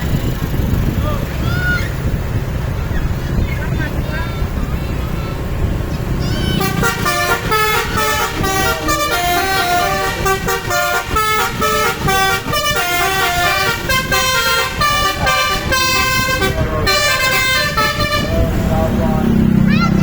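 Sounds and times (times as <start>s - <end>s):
bus horn playing a jingle: 6.3s - 18.7s.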